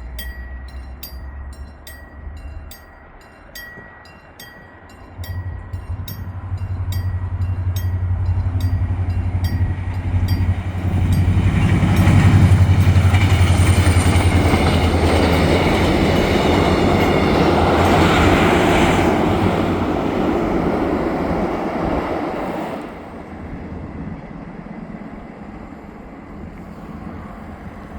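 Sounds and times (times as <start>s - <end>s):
level crossing warning bell: 0.0s - 20.3s
train wheels rumbling: 0.0s - 22.8s
diesel train engine hum: 0.0s - 27.9s.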